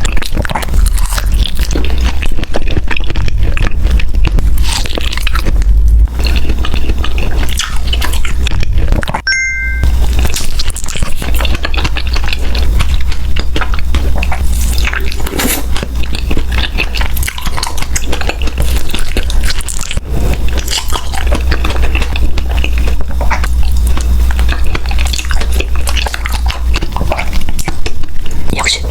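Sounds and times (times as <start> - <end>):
biting and chewing: 0.0 - 28.9
steady low hum: 0.0 - 28.9.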